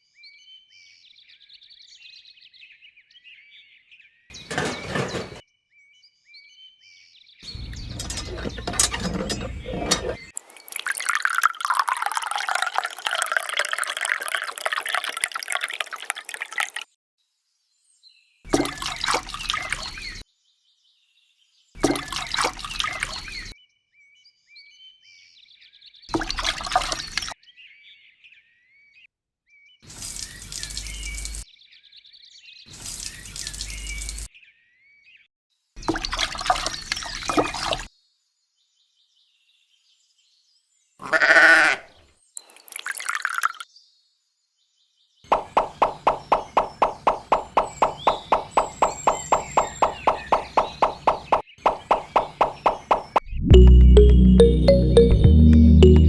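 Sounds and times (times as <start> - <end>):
water splashing and trickling: 7.7 - 17.0, 18.5 - 20.2, 21.8 - 23.6, 26.1 - 27.4, 35.8 - 37.9, 42.4 - 43.7, 45.3 - 56.0
animal bleat: 41.0 - 41.9.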